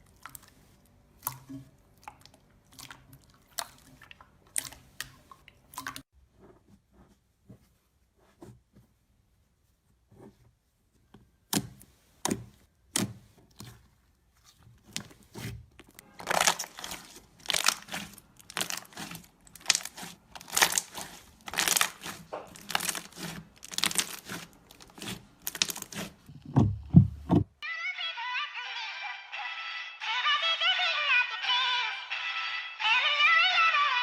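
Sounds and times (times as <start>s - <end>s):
slime squishing: 0.0s - 6.1s, 9.7s - 27.4s.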